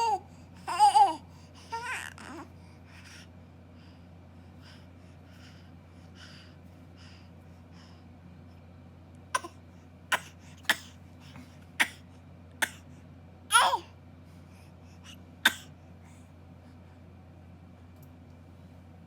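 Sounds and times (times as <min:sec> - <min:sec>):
baby coughing: 0:09.3 - 0:11.0, 0:11.8 - 0:12.0, 0:12.6 - 0:12.9, 0:13.5 - 0:13.9, 0:15.4 - 0:15.8.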